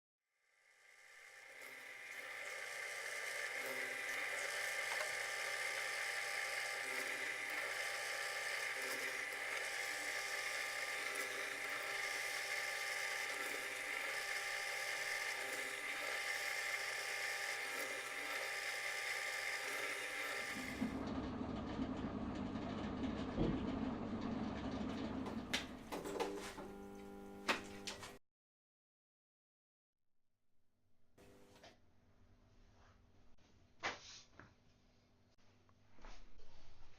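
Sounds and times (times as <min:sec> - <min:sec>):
power tool motor whining: 0:00.7 - 0:28.2.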